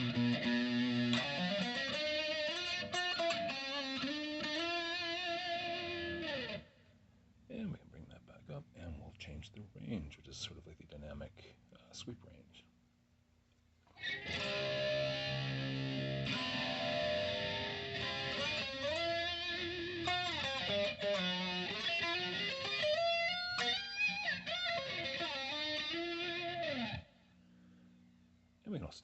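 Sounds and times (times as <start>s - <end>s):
distorted electric guitar with flanger: 0.0s - 6.7s, 13.9s - 27.1s.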